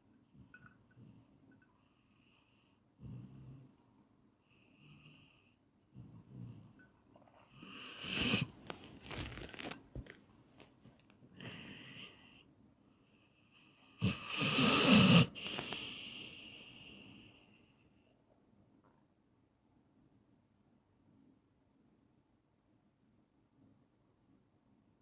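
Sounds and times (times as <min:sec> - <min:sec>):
person snoring: 0:07.6 - 0:08.6, 0:11.3 - 0:12.4, 0:14.0 - 0:17.3.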